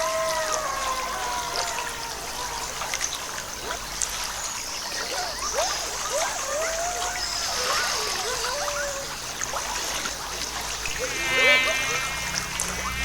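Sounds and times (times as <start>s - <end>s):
stream trickling and gurgling: 0.0s - 13.0s
rising bubbling notes: 10.9s - 13.0s.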